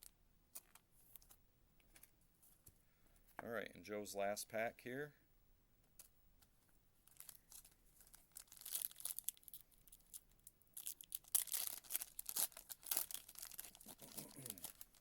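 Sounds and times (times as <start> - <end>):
foil wrapper tearing and crinkling: 7.1 - 15.0.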